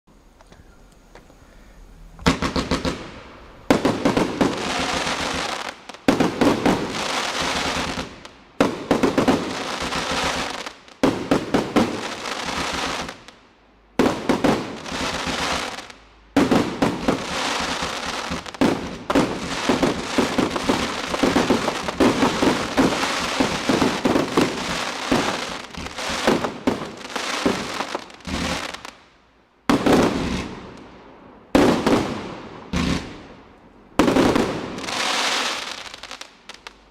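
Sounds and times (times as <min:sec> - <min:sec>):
firework cake firing volleys: 0:02.3 - 0:13.2, 0:16.4 - 0:28.8.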